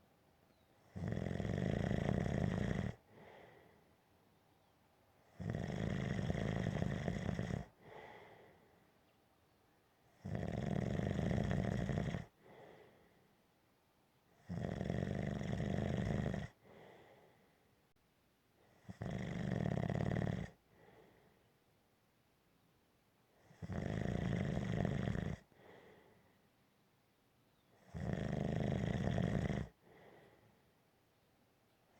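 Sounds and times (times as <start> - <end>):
long slow snores: 0.8 - 3.8, 5.2 - 8.7, 10.1 - 13.2, 14.4 - 17.4, 18.6 - 21.4, 23.4 - 26.3, 27.8 - 30.6
faint breath: 3.0 - 4.0, 7.7 - 9.1, 12.3 - 13.4, 16.5 - 17.8, 20.6 - 21.6, 25.4 - 26.5, 29.7 - 30.9.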